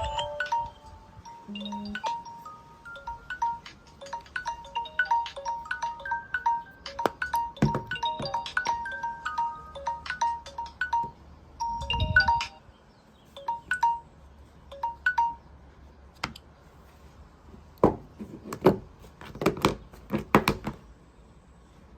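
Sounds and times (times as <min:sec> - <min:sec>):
phone alarm bell-like notes: 0:00.0 - 0:12.6.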